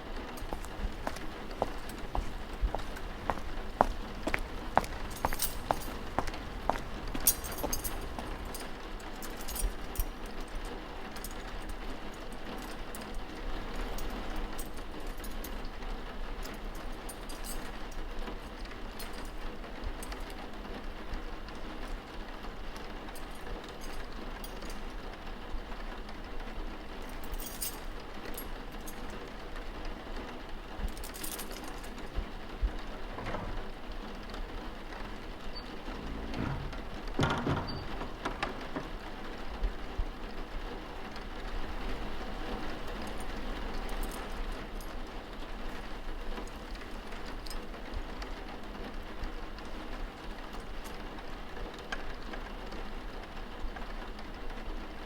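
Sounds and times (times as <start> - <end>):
knocks and rustles: 0.4 - 10.6, 30.9 - 34.0, 35.5 - 39.4.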